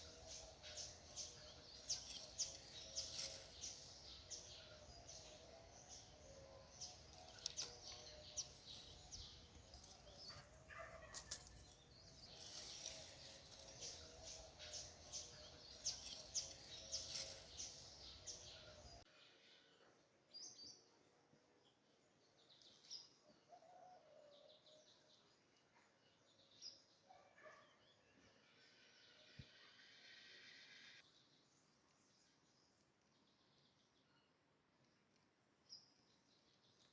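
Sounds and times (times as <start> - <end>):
birds chirping: 0.0 - 19.1
faint background noise: 0.0 - 36.9.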